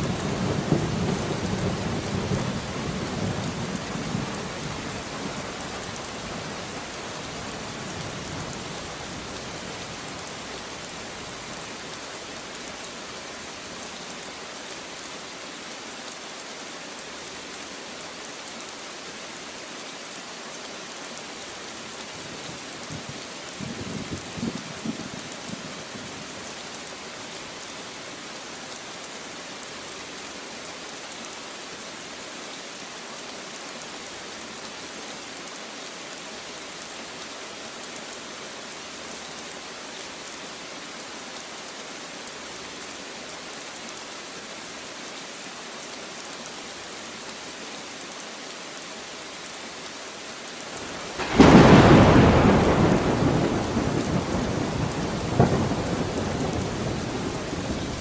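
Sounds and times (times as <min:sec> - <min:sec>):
steady rain falling: 0:00.0 - 0:58.0
loud thunderclap rumbling: 0:51.2 - 0:58.0.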